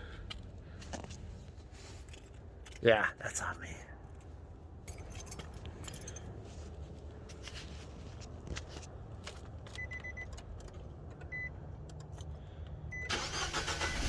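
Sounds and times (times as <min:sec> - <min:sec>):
car keys jingling: 0:04.8 - 0:06.4
short electronic car beeps: 0:12.9 - 0:13.2.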